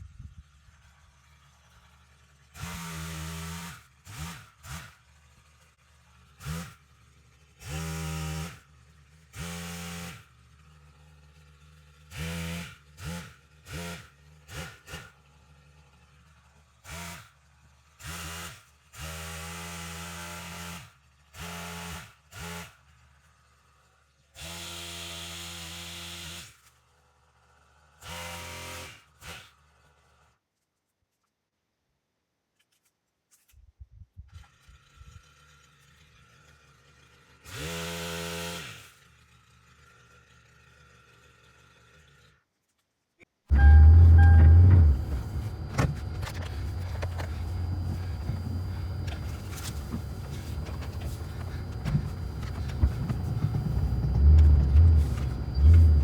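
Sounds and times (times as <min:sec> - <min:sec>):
pole saw engine revving: 0:02.6 - 0:05.0, 0:43.5 - 0:56.0.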